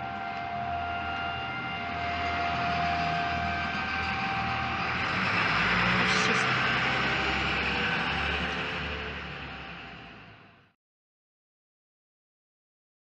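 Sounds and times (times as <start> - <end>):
droning trumpet-like tone: 0.0 - 8.6
rushing noise: 3.4 - 10.6.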